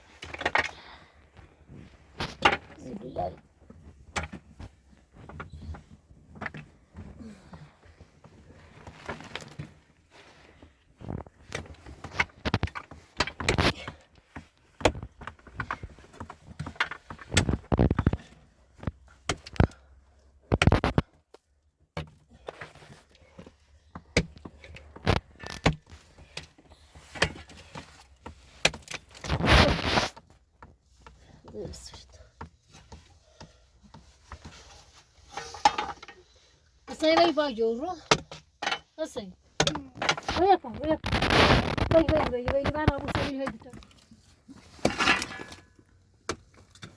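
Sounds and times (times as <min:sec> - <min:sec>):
objects knocking and thunking: 0:00.1 - 0:46.9
scraping clatter: 0:44.6 - 0:45.8.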